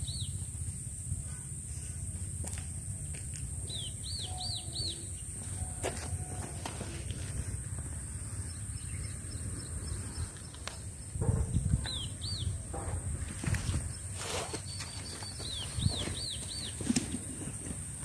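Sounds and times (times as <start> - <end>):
high insect whine: 0.0 - 18.0
bird calling: 3.6 - 7.1.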